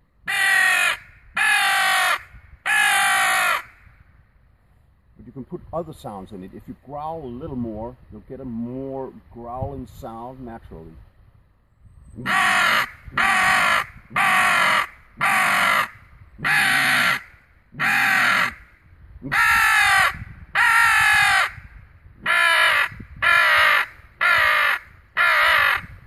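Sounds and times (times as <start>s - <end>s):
crow call caws: 0.3s - 3.9s, 12.3s - 21.6s, 22.2s - 26.0s.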